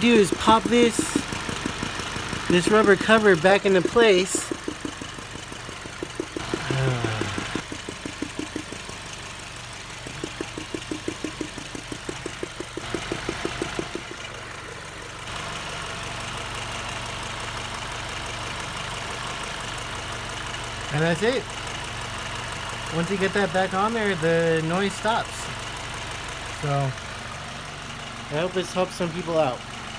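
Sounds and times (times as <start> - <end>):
fast knock-like tapping: 0.0 - 14.4
car engine idling: 0.0 - 29.9.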